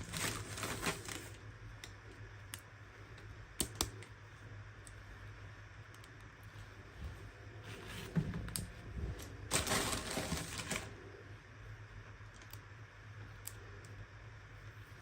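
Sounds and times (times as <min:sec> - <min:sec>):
plastic packaging crinkling: 0:00.0 - 0:01.4, 0:09.2 - 0:11.0
steady low hum: 0:00.0 - 0:15.0.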